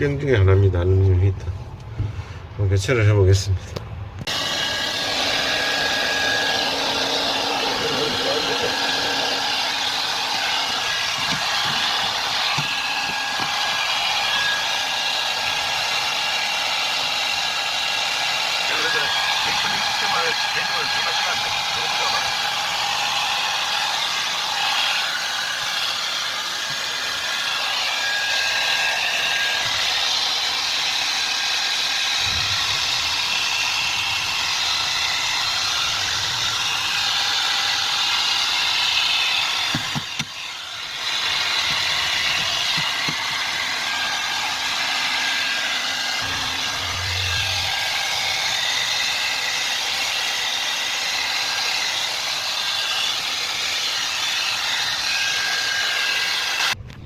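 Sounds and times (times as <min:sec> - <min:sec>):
small motor whirring: 0:04.2 - 0:56.8
low thumps: 0:46.2 - 0:47.9.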